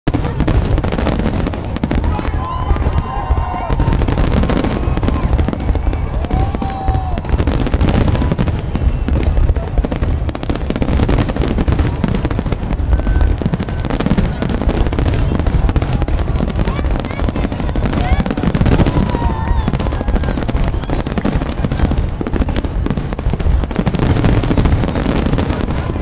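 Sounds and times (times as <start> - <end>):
fireworks bangs and crackling: 0.0 - 26.0.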